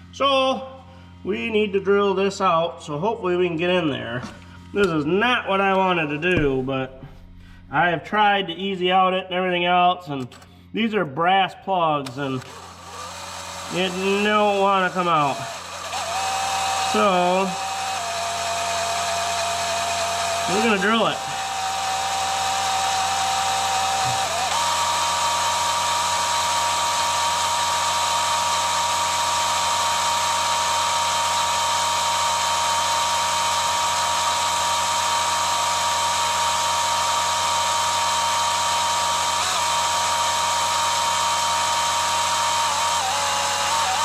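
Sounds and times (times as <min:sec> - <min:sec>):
power drill whining: 0:12.1 - 0:44.0.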